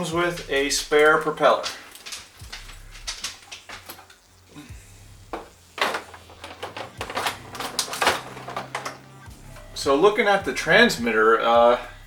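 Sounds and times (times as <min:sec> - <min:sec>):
light clicks and clatters: 0:00.3 - 0:04.4.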